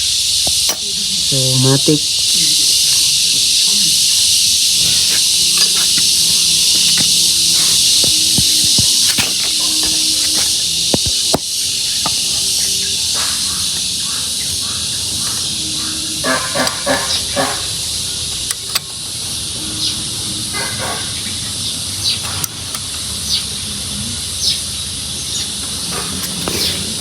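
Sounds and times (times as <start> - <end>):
high insect drone: 0.0 - 27.0
bird chirps: 4.8 - 18.3.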